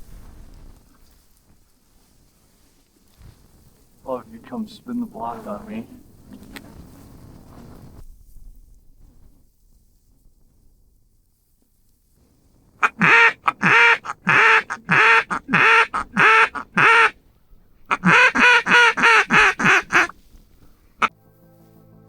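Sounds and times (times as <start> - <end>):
duck call quacks: 12.8 - 17.1, 17.9 - 20.1.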